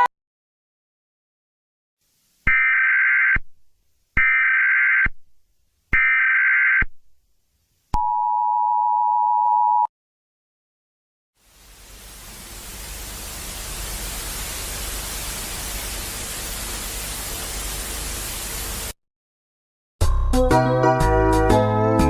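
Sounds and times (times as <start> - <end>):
static hiss: 11.4 - 19.0
music: 20.0 - 22.0.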